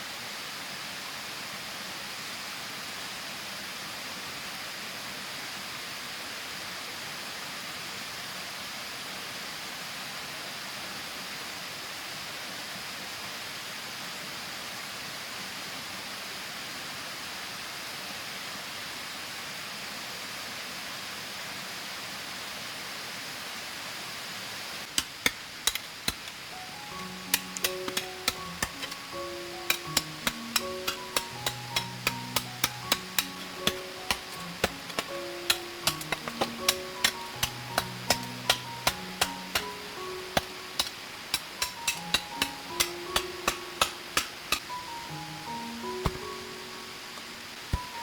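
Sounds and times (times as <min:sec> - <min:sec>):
sharp knocks: 0:25.0 - 0:44.8, 0:46.1 - 0:46.6.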